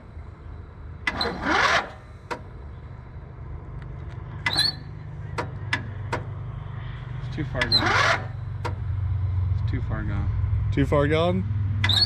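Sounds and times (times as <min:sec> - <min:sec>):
lawn tractor engine droning: 0:00.0 - 0:12.0.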